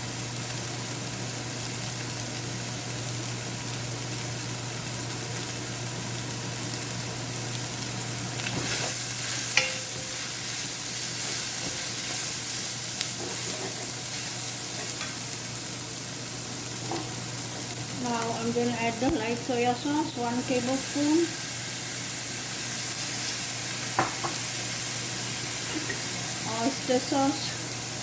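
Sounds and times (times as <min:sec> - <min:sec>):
vegetables sizzling in a frying pan: 0:00.0 - 0:28.0
utensil stirring and scraping: 0:08.5 - 0:14.0
utensil clinking against pan: 0:09.5 - 0:10.2.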